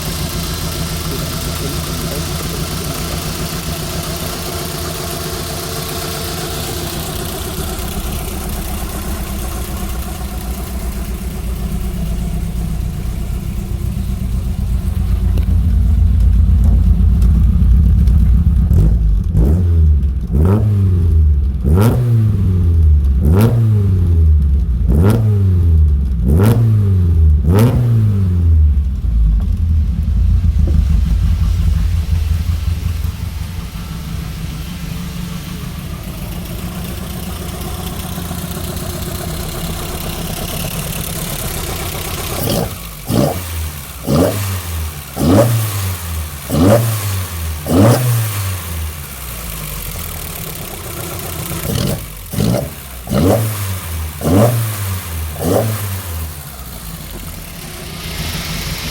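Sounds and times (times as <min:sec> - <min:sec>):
car engine idling: 0:00.0 - 0:58.9
engine revving in short blips: 0:39.2 - 0:48.8, 0:51.5 - 0:58.9.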